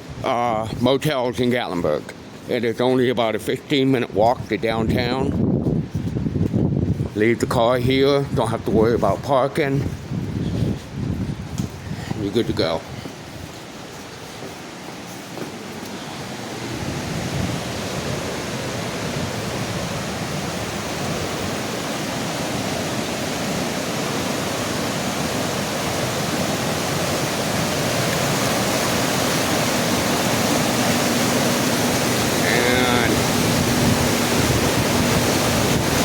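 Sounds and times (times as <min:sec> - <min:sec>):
rushing floodwater roar: 0:15.6 - 0:36.0.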